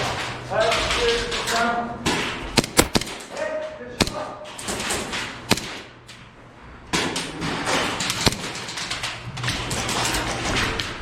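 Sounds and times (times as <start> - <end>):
shuffling movement and clatter: 0.0 - 11.0
airsoft gun shots: 2.5 - 3.3, 4.0 - 6.0, 8.1 - 8.8.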